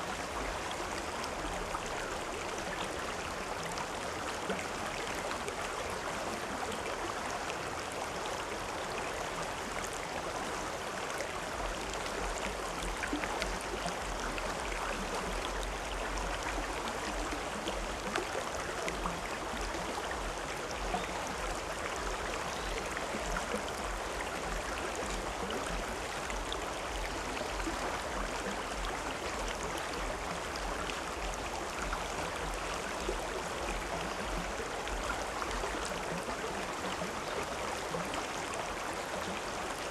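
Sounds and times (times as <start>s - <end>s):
river water flowing over rocks: 0.0s - 39.9s.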